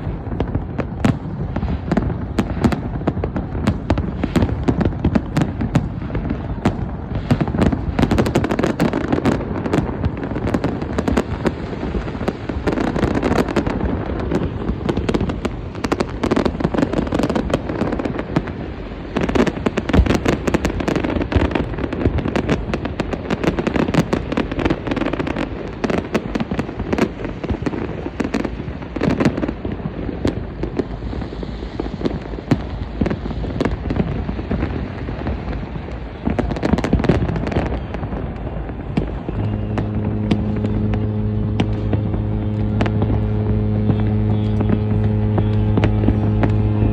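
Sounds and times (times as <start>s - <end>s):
firework shell bursts and crackling: 0.0s - 46.9s
echoing booms: 36.9s - 46.9s.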